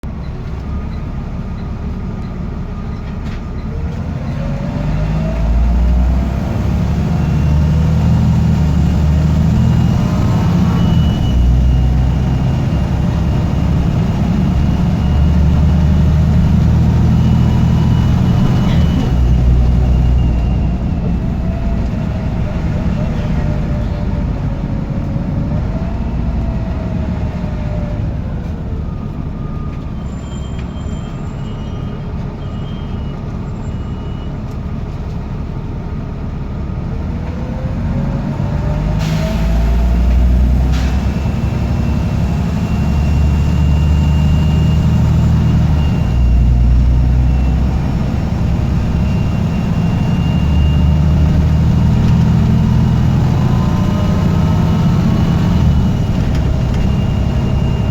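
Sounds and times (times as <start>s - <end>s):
diesel bus engine running: 0.0s - 57.9s
turbocharger whistle: 8.6s - 16.1s, 41.4s - 51.8s.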